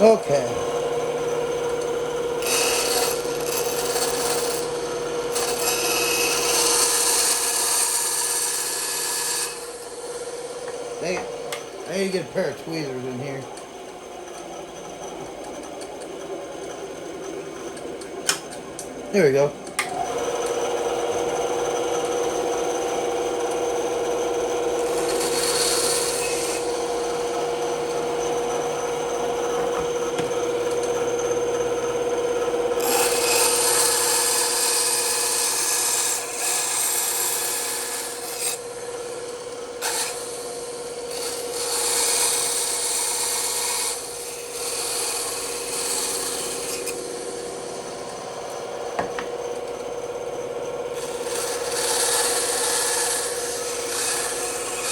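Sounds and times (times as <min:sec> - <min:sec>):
bandsaw humming: 0:00.0 - 0:54.9
saw blade rasping through wood: 0:02.4 - 0:10.1, 0:24.6 - 0:28.6, 0:32.8 - 0:38.9, 0:39.8 - 0:48.2, 0:51.0 - 0:54.9.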